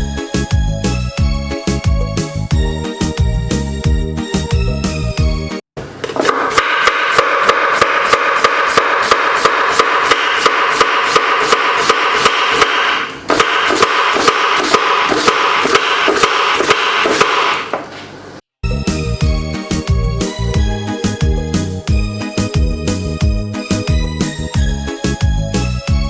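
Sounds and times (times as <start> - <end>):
knife chopping vegetables: 5.8 - 18.2.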